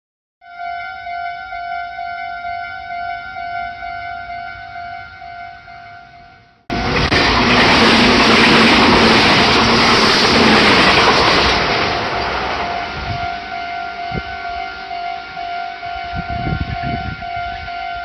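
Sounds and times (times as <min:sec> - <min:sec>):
level crossing warning bell: 0:00.4 - 0:06.5, 0:12.2 - 0:18.0
train wheels rushing on rails: 0:06.7 - 0:15.4.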